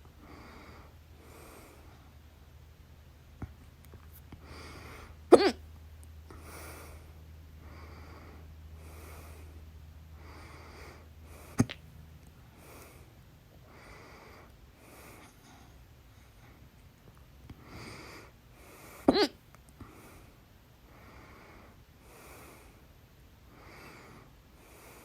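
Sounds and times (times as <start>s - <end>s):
person breathing: 0.2s - 2.2s, 4.4s - 5.2s, 6.3s - 11.6s, 12.5s - 16.7s, 17.5s - 19.1s, 19.8s - 22.9s, 23.5s - 25.0s
person hiccuping: 5.3s - 5.6s, 19.1s - 19.4s.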